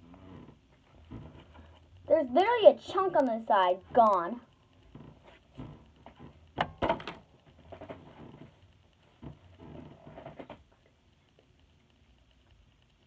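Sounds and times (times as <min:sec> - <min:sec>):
faint rustling and taps: 0:00.0 - 0:13.0
sharp knocks and clicks: 0:04.8 - 0:08.6.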